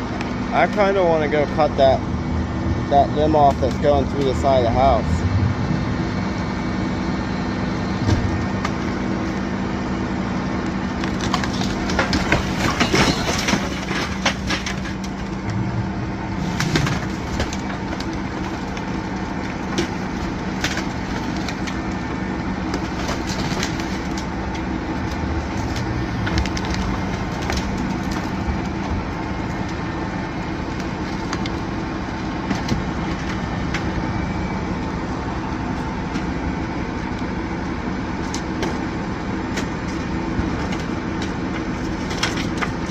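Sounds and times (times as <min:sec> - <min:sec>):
heavy engine running: 0:00.0 - 0:42.9
wood cracking and breaking: 0:11.0 - 0:15.5, 0:16.4 - 0:29.9, 0:39.5 - 0:42.9.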